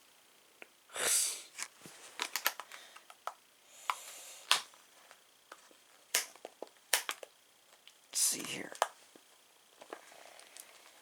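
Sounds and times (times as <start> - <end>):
packaging clicks and taps: 2.2 - 4.7.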